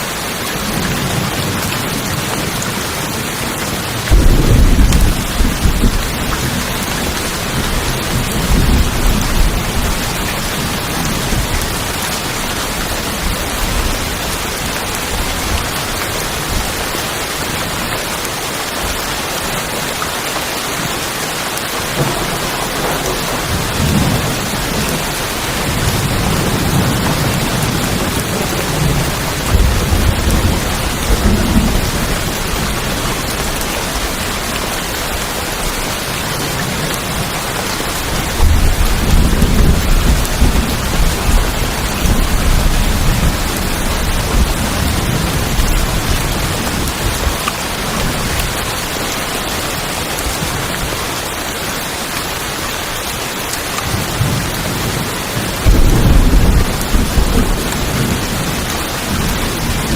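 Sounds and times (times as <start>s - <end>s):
heavy rain on tin roofs: 0.0s - 59.9s
thunder rumbling: 3.8s - 16.9s, 22.0s - 35.8s, 36.6s - 48.8s, 53.9s - 59.9s.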